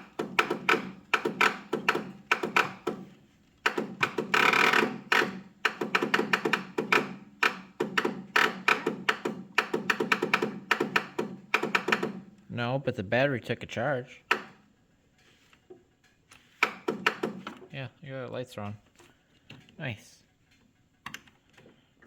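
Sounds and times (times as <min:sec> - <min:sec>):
starter cranking engine: 0:03.7 - 0:12.4.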